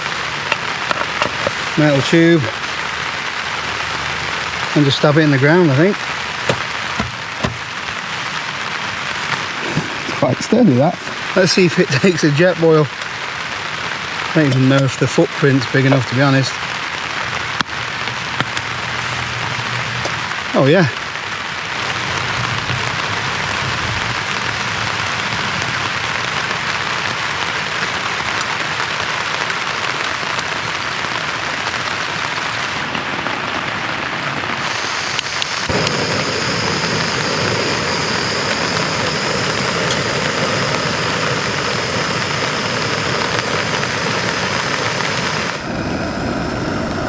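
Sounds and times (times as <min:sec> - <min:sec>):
gas stove hissing: 0:00.0 - 0:12.9, 0:27.4 - 0:47.0
rain pattering on a tarp: 0:00.0 - 0:45.8.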